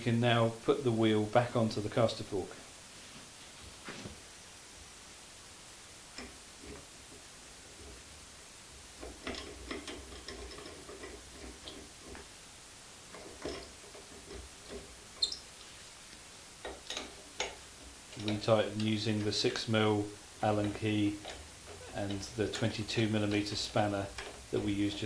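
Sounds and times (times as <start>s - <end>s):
light clicks and knocks of tools: 20.6s - 24.4s.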